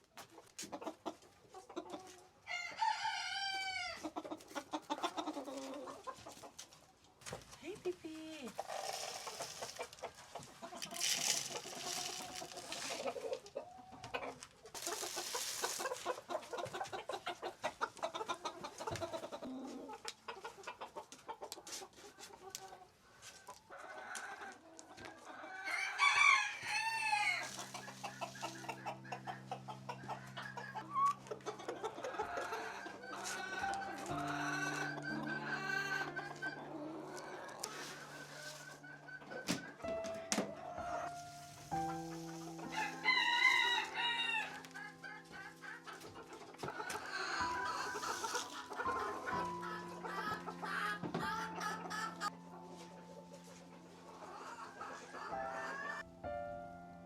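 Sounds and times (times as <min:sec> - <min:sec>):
chickens clucking: 0:00.0 - 0:56.1
soft music with held notes: 0:00.7 - 0:06.9, 0:08.6 - 0:57.0
rooster crowing: 0:02.5 - 0:04.0, 0:25.5 - 0:27.5, 0:42.6 - 0:45.0.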